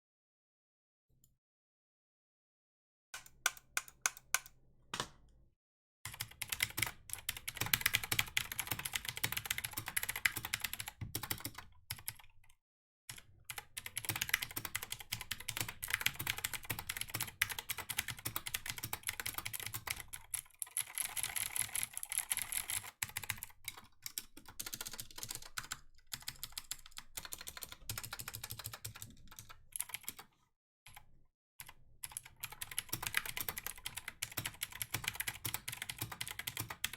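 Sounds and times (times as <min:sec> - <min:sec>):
fast keyboard typing: 0:06.1 - 0:12.3, 0:13.1 - 0:30.2, 0:31.6 - 0:36.9.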